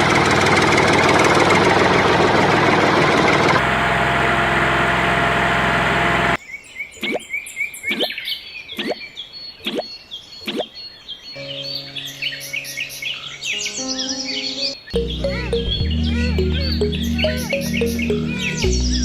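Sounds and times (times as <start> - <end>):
birds chirping: 6.4 - 19.0.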